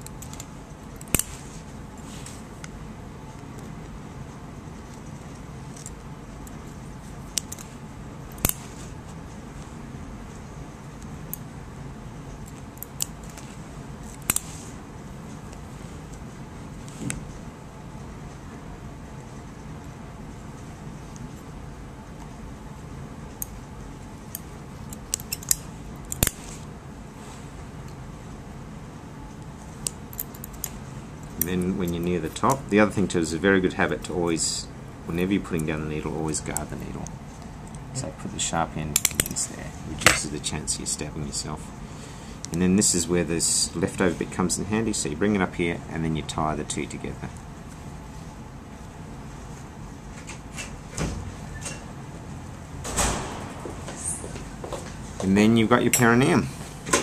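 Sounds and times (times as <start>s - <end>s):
surgical instruments clicking: 0.0s - 1.3s, 24.3s - 26.5s
low background hum: 0.0s - 57.0s.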